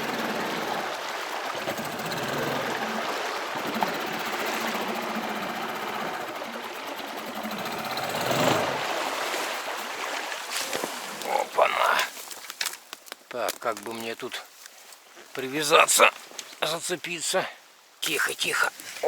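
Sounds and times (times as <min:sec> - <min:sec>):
small boat motor running: 0:00.0 - 0:11.2
rushing river water: 0:00.0 - 0:12.8, 0:13.8 - 0:19.0.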